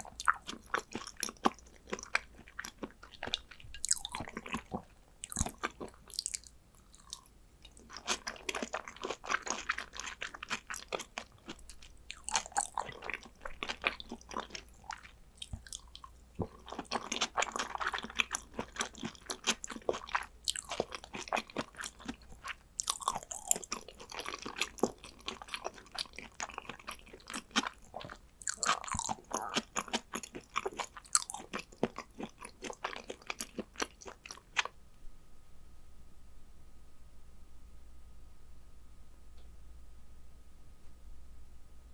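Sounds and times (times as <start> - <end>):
close chewing and mouth smacks: 0.0 - 34.8.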